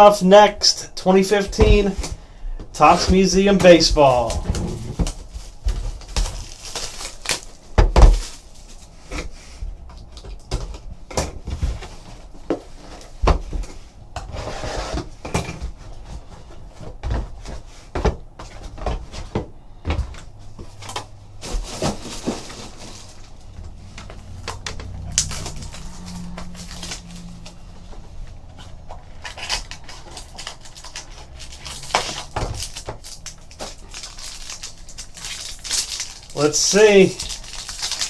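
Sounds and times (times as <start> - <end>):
packaging rustling and tearing: 2.8 - 9.3, 20.7 - 38.0.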